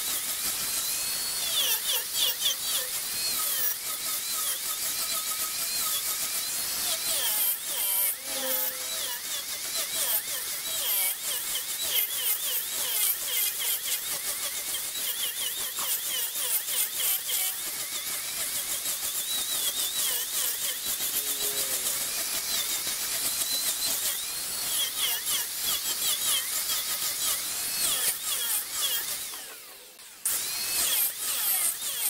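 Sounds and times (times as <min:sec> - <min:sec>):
lathe tool cutting hiss: 0:00.0 - 0:11.9, 0:17.8 - 0:29.6
tool squealing on wood: 0:00.7 - 0:29.6.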